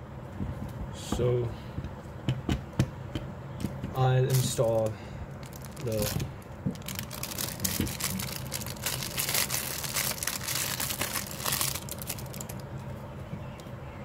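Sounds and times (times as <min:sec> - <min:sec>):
plastic crinkling and clicking: 0:04.3 - 0:12.8.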